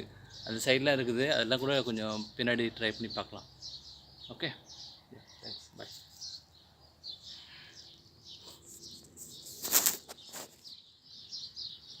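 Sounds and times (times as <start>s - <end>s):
small birds chirping: 0.0s - 12.0s
rustling: 8.4s - 10.8s.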